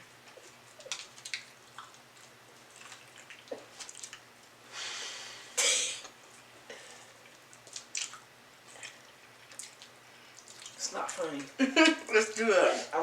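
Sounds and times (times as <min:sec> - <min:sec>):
chewing fried chicken: 0:00.0 - 0:04.6, 0:06.1 - 0:12.0.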